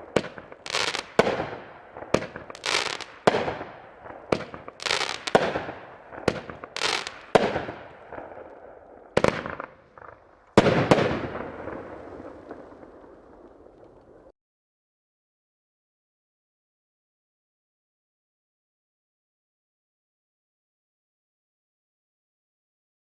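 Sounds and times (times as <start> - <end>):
fireworks sharp reports: 0.0 - 14.3
fireworks hiss: 0.6 - 1.3, 2.5 - 3.3, 4.8 - 5.4, 6.8 - 7.3.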